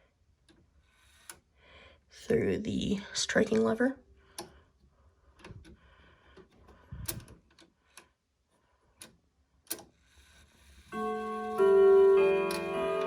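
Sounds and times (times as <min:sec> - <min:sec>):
clock movement clicks and knocks: 0:09.0 - 0:13.0.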